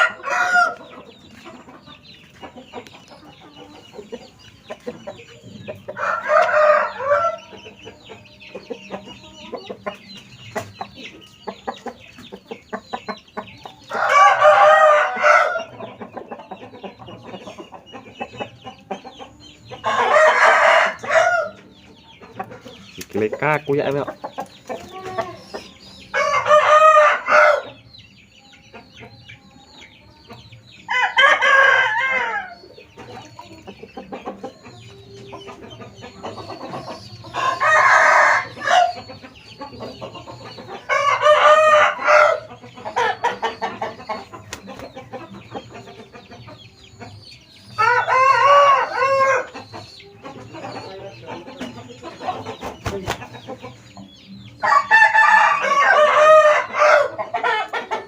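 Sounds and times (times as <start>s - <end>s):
roosters crowing: 0.0s - 1.7s, 5.0s - 10.0s, 13.1s - 17.0s, 19.5s - 21.8s, 24.7s - 27.9s, 30.8s - 33.0s, 34.4s - 44.6s, 47.5s - 58.0s
chickens clucking: 0.0s - 58.0s.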